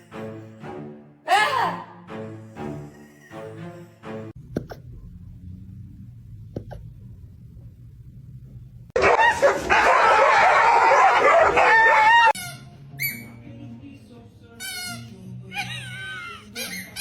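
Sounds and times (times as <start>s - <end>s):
dog barking and howling: 9.0s - 12.4s.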